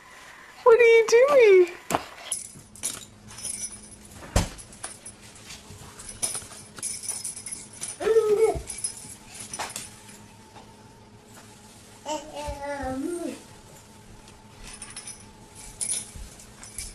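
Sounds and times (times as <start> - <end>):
toy clicks and jingling: 6.1 - 10.0
dog whining: 7.8 - 9.1.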